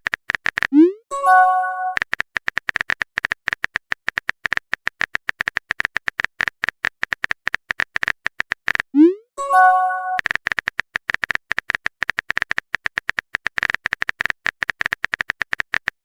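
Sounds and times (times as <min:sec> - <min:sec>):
rapid keyboard tap clicks: 0:00.0 - 0:00.7, 0:01.9 - 0:08.9, 0:10.2 - 0:16.0
phone chime: 0:01.1 - 0:02.0, 0:09.4 - 0:10.2.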